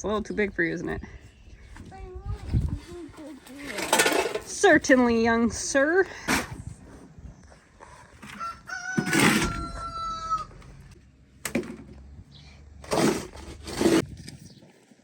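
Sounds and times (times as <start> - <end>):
rooster crowing: 8.2 - 10.8.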